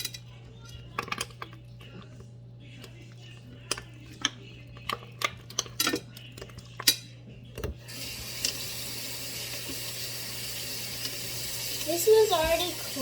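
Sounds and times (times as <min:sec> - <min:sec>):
tap water running: 0:07.5 - 0:13.0.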